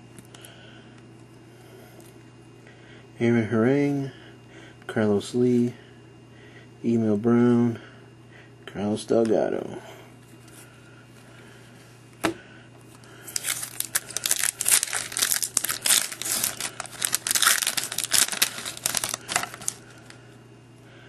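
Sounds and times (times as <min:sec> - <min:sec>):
wrapper tearing and crinkling: 0:13.3 - 0:20.2.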